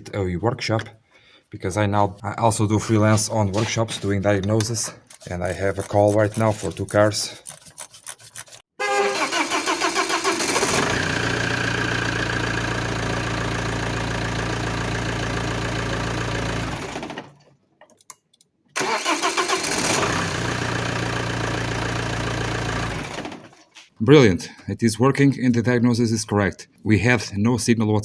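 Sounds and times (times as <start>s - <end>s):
starter motor cranking: 4.6s - 17.4s, 18.8s - 23.6s
diesel engine idling: 10.8s - 16.4s.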